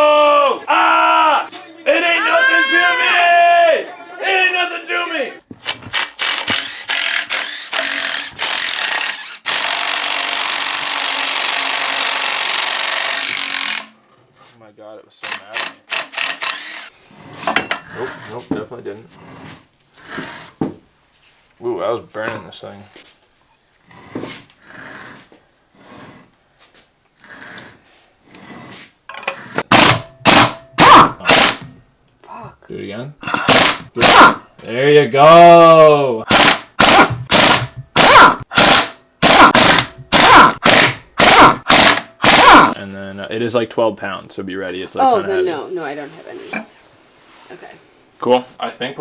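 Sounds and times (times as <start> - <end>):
impact wrench running: 5.6 - 13.9, 15.2 - 16.9, 29.6 - 31.8, 33.2 - 34.4, 36.3 - 42.8
loud metal bangs: 29.7 - 31.8.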